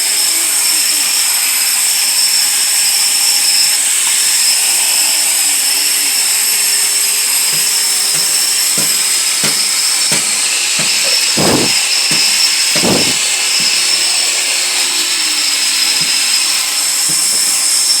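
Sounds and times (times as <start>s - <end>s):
floor grinding machine whining: 0.0s - 18.0s
heavy thumps: 7.5s - 14.0s
scattered knocks: 7.5s - 14.0s, 16.0s - 18.0s.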